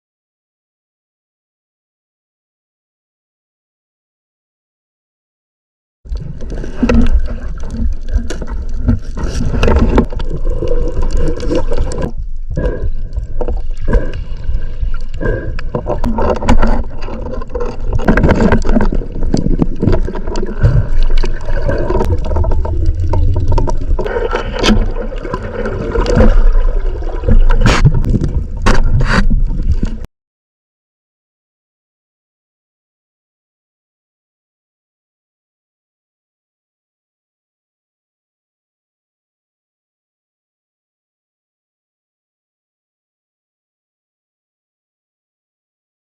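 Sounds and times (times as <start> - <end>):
water sloshing and gurgling: 6.1 - 30.1.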